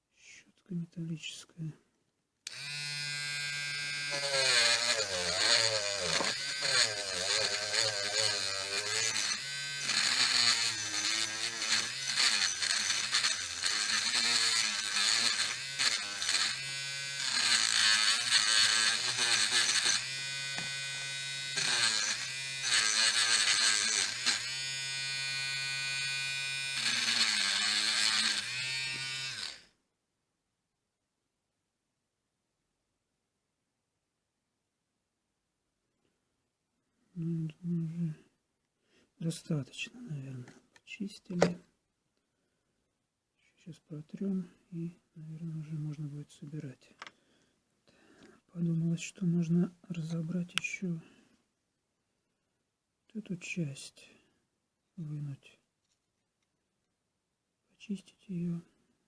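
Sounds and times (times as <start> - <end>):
wire brush grinder scrubbing metal: 3.9 - 20.7, 21.4 - 24.6, 26.6 - 29.6.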